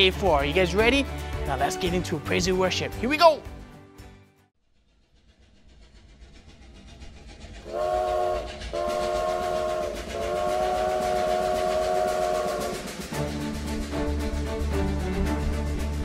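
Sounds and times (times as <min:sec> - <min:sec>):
train rumbling: 0:04.6 - 0:16.0
steam train whistle: 0:07.6 - 0:13.4.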